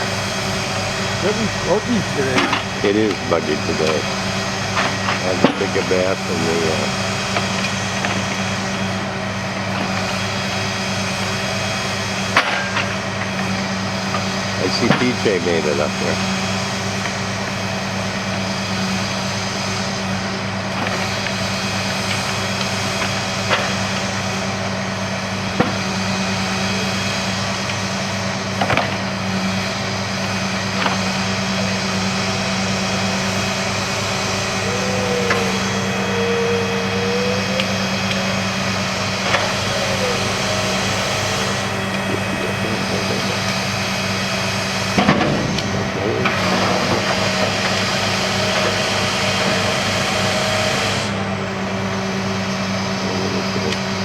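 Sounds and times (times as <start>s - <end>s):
heavy machinery engine running: 0.0s - 54.0s
wavering squeal: 31.4s - 54.0s.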